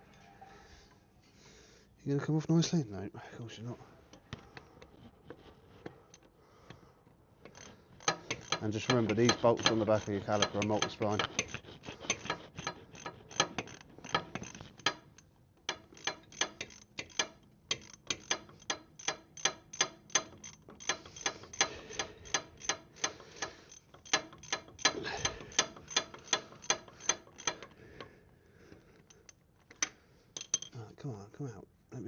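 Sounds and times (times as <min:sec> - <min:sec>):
hand ratchet clicking: 0:07.0 - 0:30.7.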